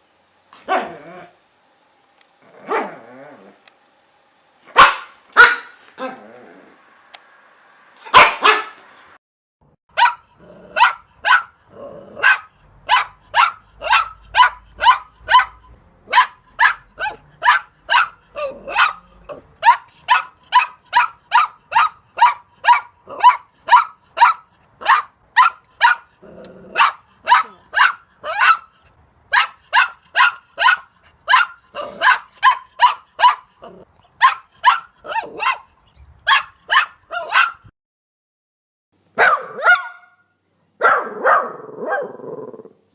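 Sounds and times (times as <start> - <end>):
puppy barking: 0.6 - 1.3, 2.6 - 3.0, 4.7 - 6.2, 8.0 - 8.8, 9.9 - 37.7, 39.2 - 40.2, 40.8 - 42.2.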